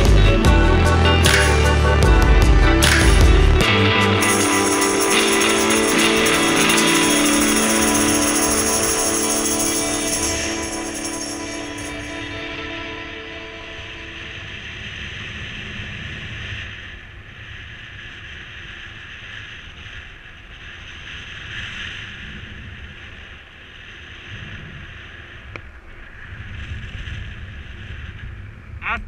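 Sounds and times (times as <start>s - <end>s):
wind rushing over microphone: 0.0s - 29.0s.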